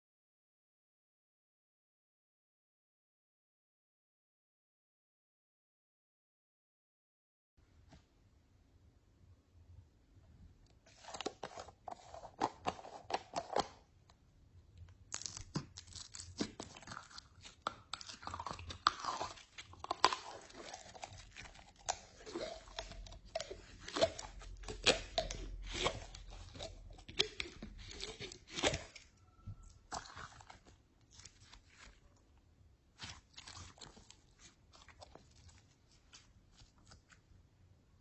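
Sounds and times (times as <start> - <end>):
slime squished by hand: 15.0 - 32.1, 32.9 - 37.2.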